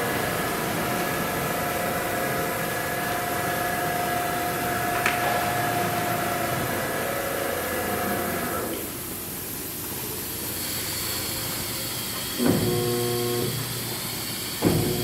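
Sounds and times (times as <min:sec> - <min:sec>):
machine whine: 0:10.6 - 0:15.0
grinding machine hum: 0:10.8 - 0:15.0.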